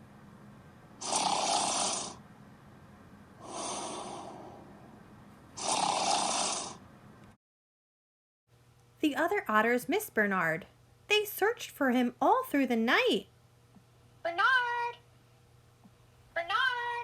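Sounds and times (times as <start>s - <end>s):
loud snoring: 1.0s - 2.2s, 3.4s - 4.8s, 5.6s - 6.8s
soft breath out: 3.4s - 4.8s.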